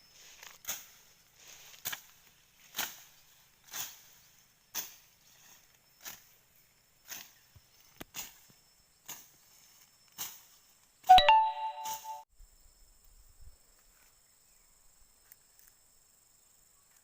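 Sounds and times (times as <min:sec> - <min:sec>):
footsteps crunching dry vegetation: 0:00.0 - 0:04.2
faint high insect-like hum: 0:00.0 - 0:11.0, 0:12.3 - 0:17.0.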